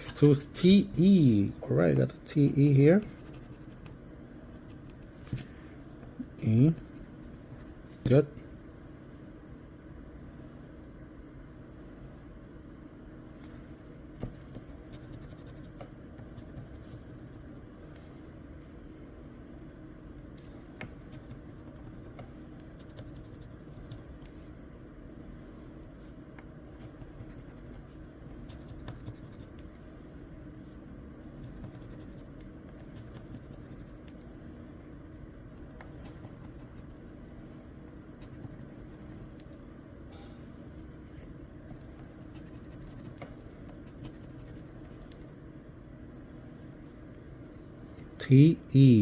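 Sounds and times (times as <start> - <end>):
low background hum: 0.0 - 49.0
scratching lottery ticket: 2.7 - 5.5, 14.9 - 17.7, 20.4 - 24.2, 26.8 - 29.6, 31.4 - 34.0, 35.8 - 37.2, 38.2 - 39.4, 42.2 - 45.1.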